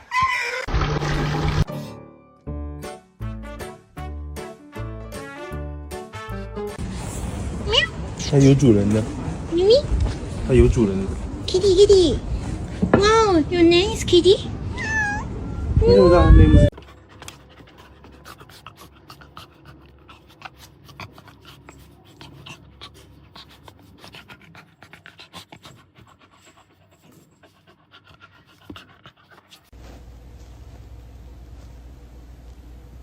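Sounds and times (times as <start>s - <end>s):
dog panting: 16.7s - 29.7s.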